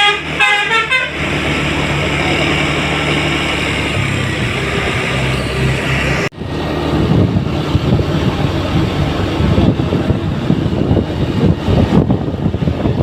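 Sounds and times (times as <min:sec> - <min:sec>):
engine hum: 0:00.0 - 0:13.0
passing vehicles road noise: 0:00.0 - 0:13.0.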